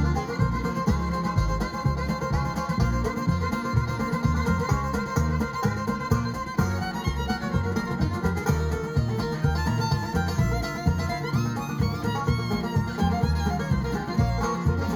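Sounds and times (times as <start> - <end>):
fiddle: 0.0 - 14.9
string band playing: 0.0 - 14.9.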